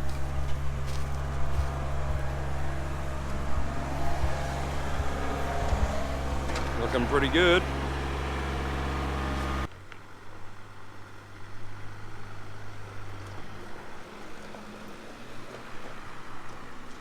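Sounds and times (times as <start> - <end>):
distant engine humming: 0.0 - 9.7.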